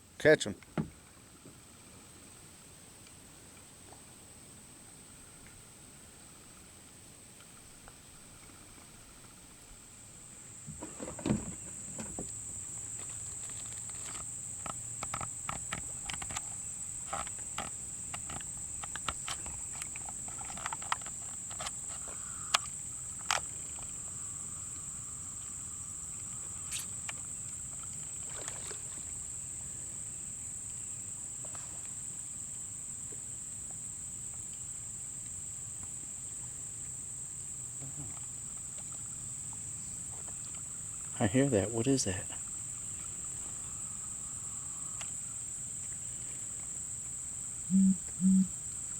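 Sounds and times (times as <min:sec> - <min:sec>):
insects droning: 0:00.0 - 0:48.9.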